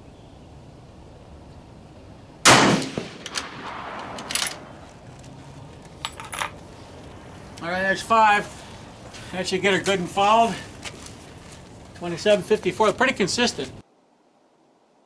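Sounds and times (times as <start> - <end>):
rifle shot with echo: 2.4 - 4.8.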